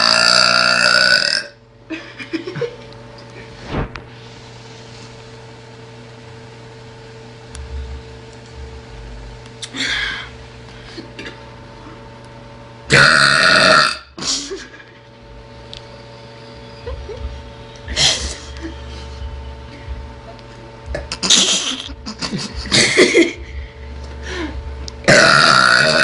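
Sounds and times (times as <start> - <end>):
woman burping: 0.0 - 1.6, 12.9 - 14.8, 25.0 - 26.0.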